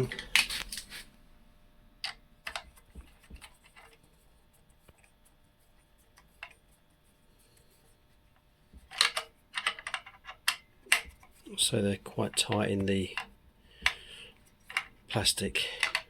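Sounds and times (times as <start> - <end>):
metal bolts clicking and scraping: 8.9 - 11.4, 15.6 - 16.0.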